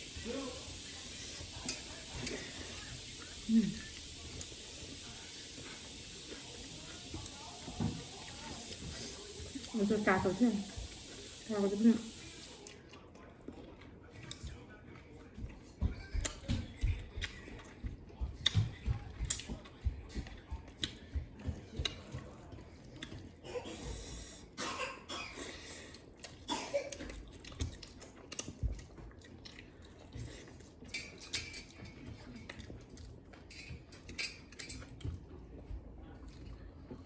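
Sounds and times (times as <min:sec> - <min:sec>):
wet chewing: 0:00.0 - 0:11.5, 0:18.4 - 0:23.4, 0:25.8 - 0:37.0.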